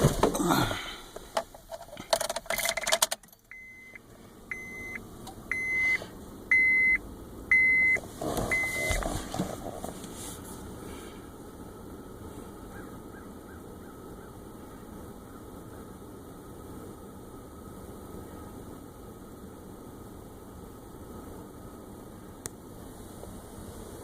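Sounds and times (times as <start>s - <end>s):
rapid clatter of clicks: 1.2s - 3.4s
car warning chime beeping: 3.4s - 9.1s
short rustle: 8.0s - 11.2s.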